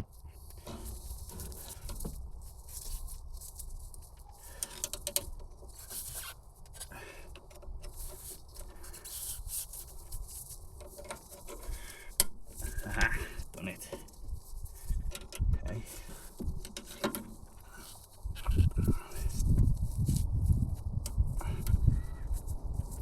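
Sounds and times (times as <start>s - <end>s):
hands scraping and rustling: 0.0s - 23.0s.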